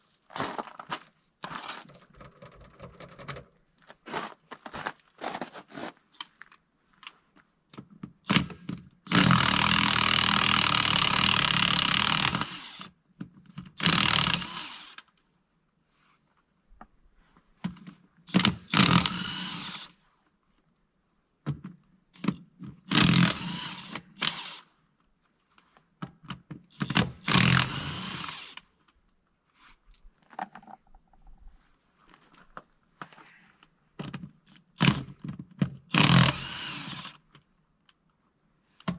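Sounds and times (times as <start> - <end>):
power tool on wheel bolts: 8.3 - 13.0, 13.8 - 15.1, 18.3 - 20.0, 22.8 - 24.7, 26.8 - 28.7, 34.8 - 37.2.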